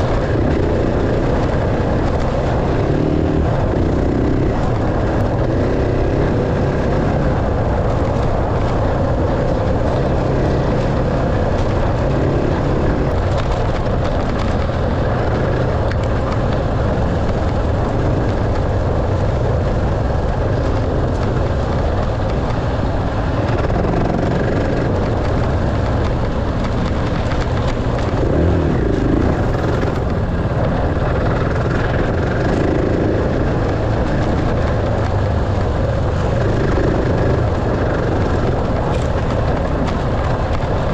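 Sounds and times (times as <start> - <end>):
dirt bike engine: 0.0 - 40.9
steady rough noise: 0.0 - 40.9.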